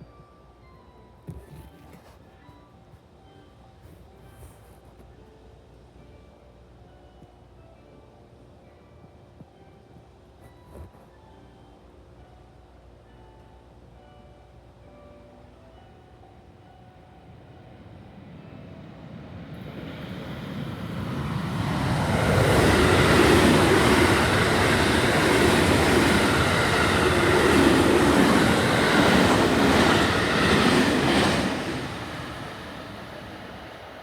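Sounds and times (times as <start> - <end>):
train wheels rushing on rails: 17.9 - 34.0.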